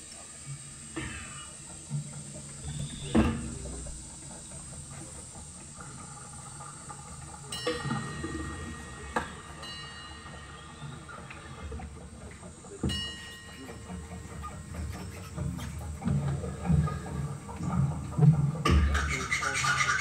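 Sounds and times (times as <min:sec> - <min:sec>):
steady hiss: 0:00.0 - 0:20.0
metallic knocks and clanks: 0:05.7 - 0:17.2.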